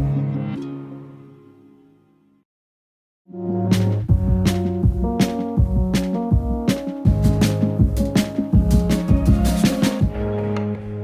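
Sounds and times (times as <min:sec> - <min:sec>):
background music: 0:00.0 - 0:02.3, 0:03.3 - 0:11.0
drum hit: 0:03.7 - 0:10.2.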